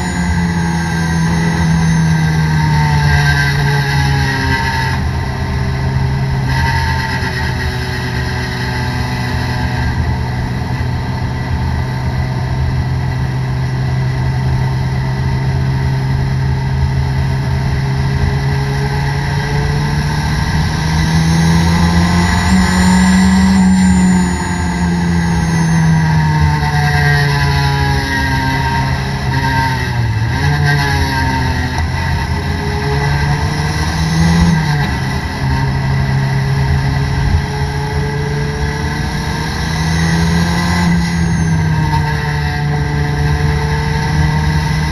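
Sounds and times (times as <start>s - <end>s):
faint high whine: 0.0s - 6.1s, 16.3s - 30.2s
car engine from inside cabin: 0.0s - 44.9s.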